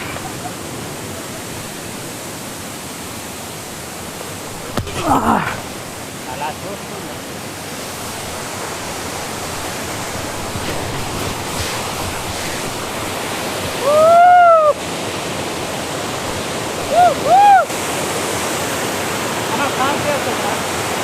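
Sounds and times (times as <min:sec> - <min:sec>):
waterfall roaring: 0:00.0 - 0:21.0
loud rising and falling call: 0:13.8 - 0:14.8.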